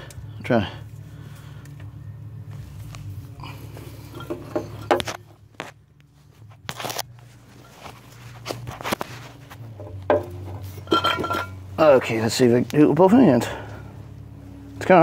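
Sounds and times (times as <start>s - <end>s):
low steady hum: 0.0s - 15.0s
tools and parts clicking and scraping: 3.6s - 5.8s, 6.4s - 11.7s.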